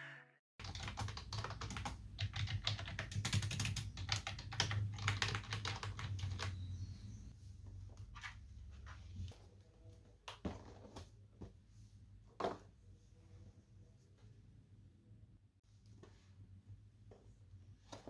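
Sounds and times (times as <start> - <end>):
mechanical keyboard typing: 0.6 - 6.6.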